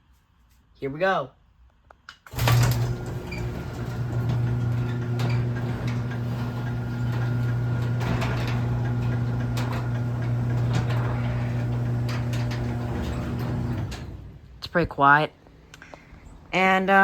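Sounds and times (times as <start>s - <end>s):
garage door opener motor hum: 2.3s - 14.6s.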